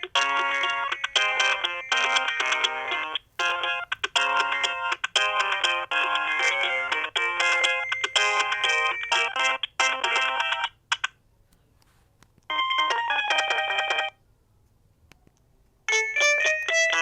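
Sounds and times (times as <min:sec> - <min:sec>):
polyphonic phone ringtone melody: 0:00.0 - 0:10.8, 0:12.5 - 0:14.2, 0:15.9 - 0:17.0.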